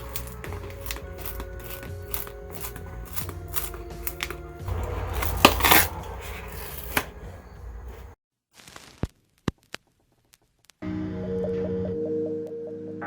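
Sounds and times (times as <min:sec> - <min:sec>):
soft background music: 0:00.0 - 0:08.0.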